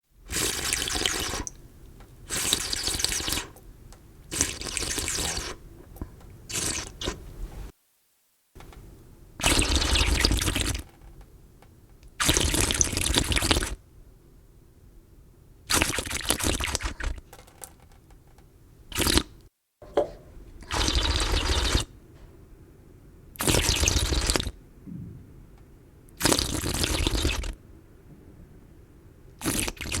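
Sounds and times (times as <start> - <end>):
slurping liquid: 0.3 - 1.6, 2.3 - 3.6, 4.3 - 5.7, 6.5 - 7.2, 9.4 - 10.9, 12.2 - 13.8, 15.7 - 17.3, 18.9 - 21.9, 23.4 - 24.5, 26.2 - 27.6, 29.4 - 30.0.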